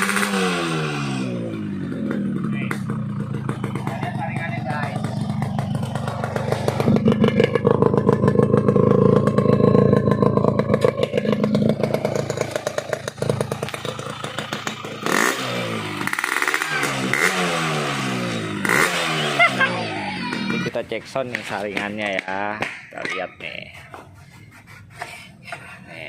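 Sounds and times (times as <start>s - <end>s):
motorcycle engine revving: 0.0s - 22.3s.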